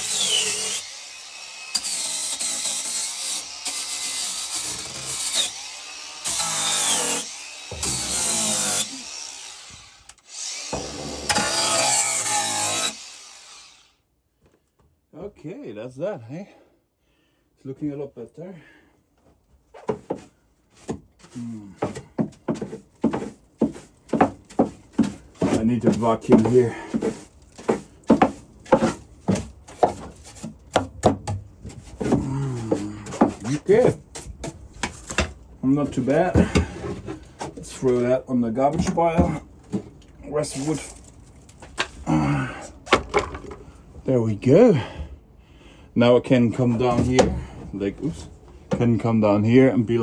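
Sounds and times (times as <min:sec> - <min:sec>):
power grinder grinding wood: 0:00.0 - 0:13.9, 0:20.8 - 0:30.6, 0:40.3 - 0:42.2
scrap wood knocking: 0:19.8 - 0:38.0.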